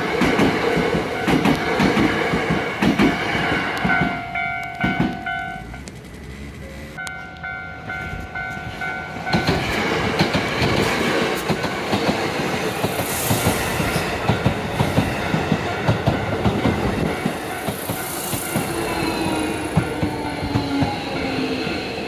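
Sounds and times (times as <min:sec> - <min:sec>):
train wheels clattering over rails: 0:00.0 - 0:06.9, 0:08.1 - 0:22.0
level-crossing bell ringing: 0:03.4 - 0:05.8, 0:07.0 - 0:09.6.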